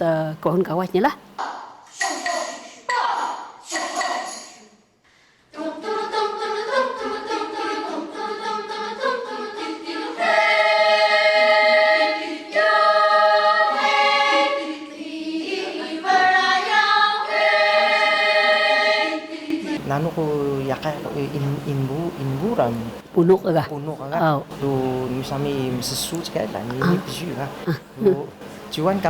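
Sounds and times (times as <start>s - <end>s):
choir singing long notes: 5.5s - 20.2s.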